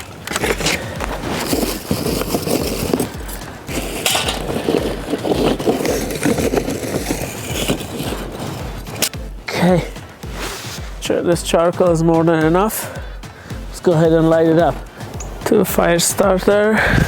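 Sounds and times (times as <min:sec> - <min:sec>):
charcoal rattling and clinking: 0:00.0 - 0:09.2.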